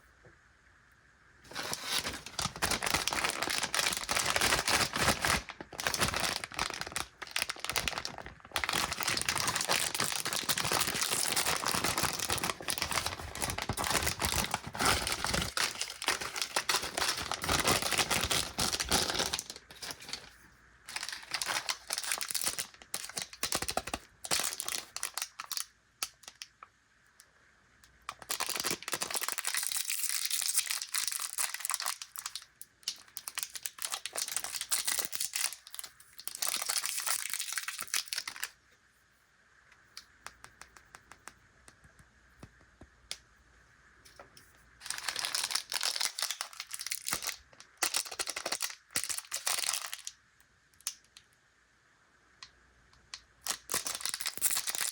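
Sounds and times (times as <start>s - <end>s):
plastic packaging crinkling and tearing: 1.5s - 26.6s, 28.0s - 38.6s, 44.8s - 50.2s, 53.4s - 54.9s.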